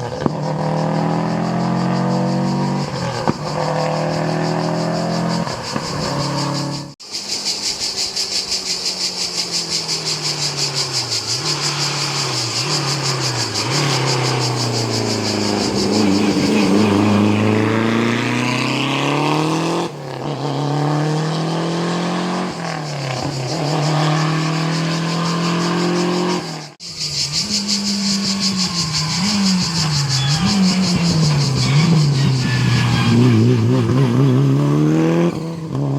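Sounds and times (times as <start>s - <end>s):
racing car engines accelerating: 0.0s - 7.0s, 9.0s - 35.9s.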